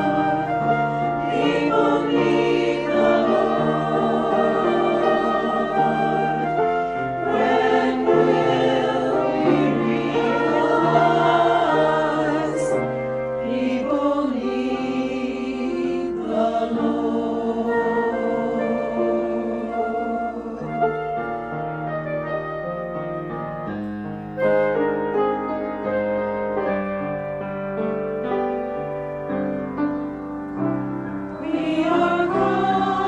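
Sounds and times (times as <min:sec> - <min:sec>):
choir singing sacred music: 0:00.0 - 0:21.7, 0:30.7 - 0:33.0.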